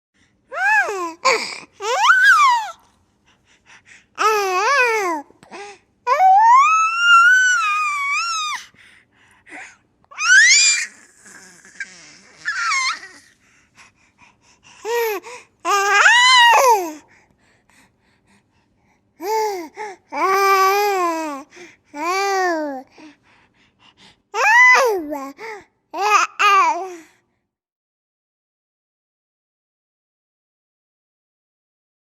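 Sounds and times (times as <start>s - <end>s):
high-pitched baby-like squeals: 0.5s - 2.8s, 6.1s - 8.7s, 10.1s - 13.4s, 15.7s - 17.0s, 24.4s - 25.2s.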